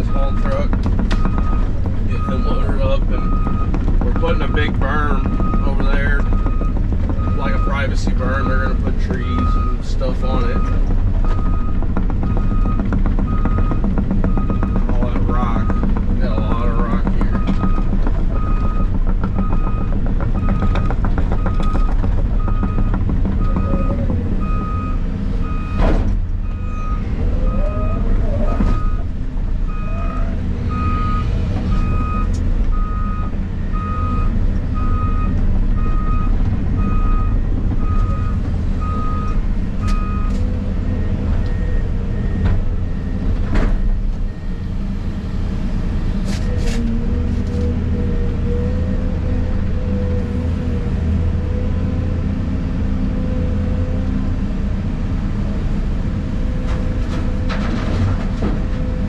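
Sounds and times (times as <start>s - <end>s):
backup alarm beeping: 0.0s - 8.4s, 17.3s - 29.1s, 29.7s - 44.8s
excavator diesel engine running: 0.0s - 59.0s
sharp knocks: 10.3s - 25.1s.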